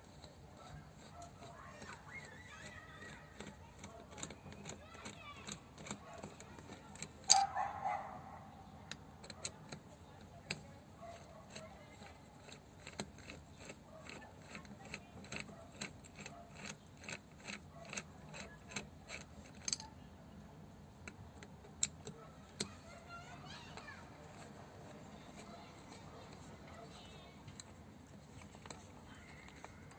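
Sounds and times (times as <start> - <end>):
light clicks of tools: 8.8 - 20.0, 23.7 - 29.9.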